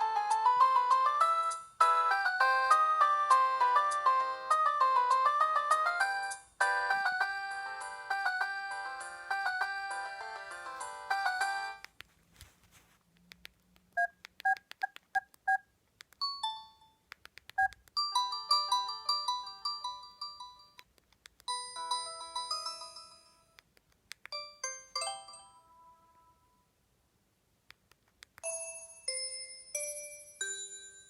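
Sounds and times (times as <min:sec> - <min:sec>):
melodic phone chimes: 0:00.6 - 0:11.8, 0:21.5 - 0:23.5, 0:28.4 - 0:31.0.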